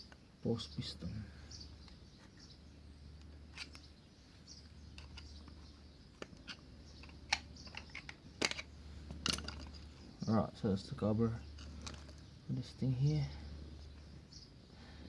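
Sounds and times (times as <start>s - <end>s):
tool and metal parts clicking: 4.9s - 9.9s.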